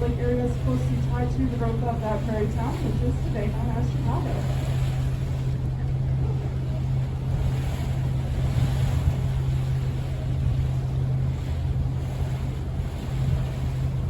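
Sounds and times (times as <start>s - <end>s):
boat engine humming: 0.0s - 14.0s
water noise: 0.0s - 14.0s
wind: 0.0s - 14.0s.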